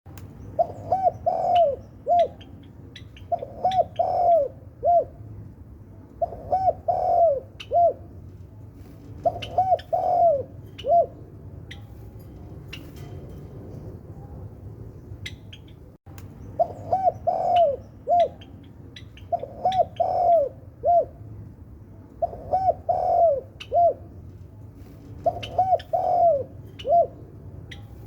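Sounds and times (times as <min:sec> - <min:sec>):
dove cooing: 0:00.6 - 0:05.3, 0:06.2 - 0:08.2, 0:09.0 - 0:11.2, 0:16.6 - 0:21.2, 0:22.2 - 0:24.2, 0:25.1 - 0:27.3.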